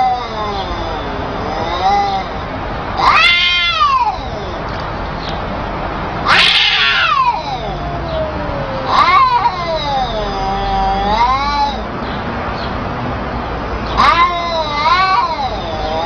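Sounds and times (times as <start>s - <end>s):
cat screeching: 0.0s - 4.8s, 6.2s - 11.9s, 13.9s - 16.0s
cats yowling in a fight: 0.0s - 4.8s, 6.2s - 11.9s, 13.9s - 16.0s.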